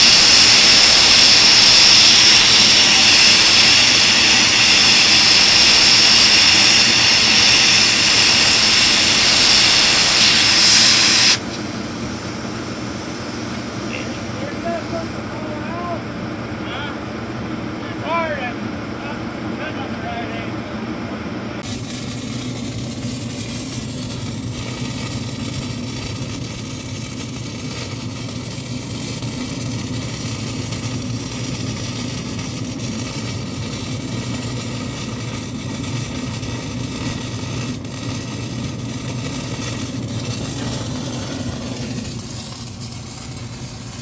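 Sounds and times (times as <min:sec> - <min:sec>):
even hiss: 0:00.0 - 0:11.4, 0:21.6 - 0:44.0
machine hum: 0:00.0 - 0:19.6, 0:21.3 - 0:44.0.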